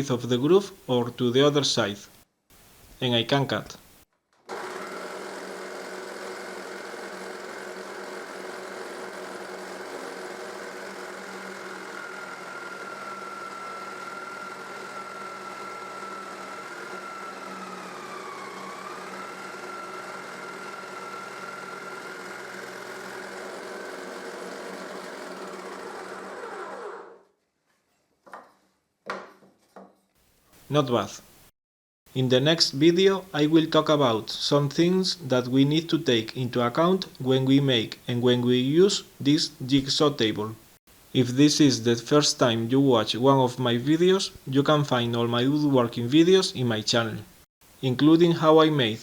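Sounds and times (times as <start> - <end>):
jigsaw cutting a board: 4.5 - 27.2.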